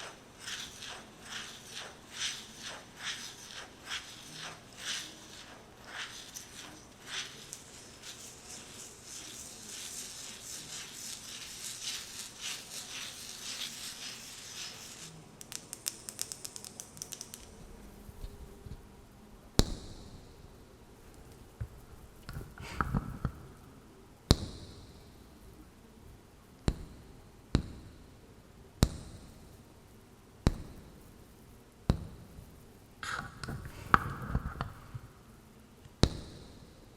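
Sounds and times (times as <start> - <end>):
light nail taps: 15.4 - 17.5.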